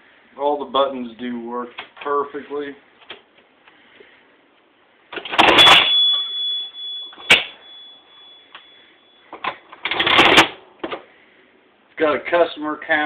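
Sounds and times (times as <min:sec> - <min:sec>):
cash register mechanism clattering: 0:05.2 - 0:07.6, 0:09.4 - 0:10.6
cash register bell ringing: 0:05.4 - 0:10.5.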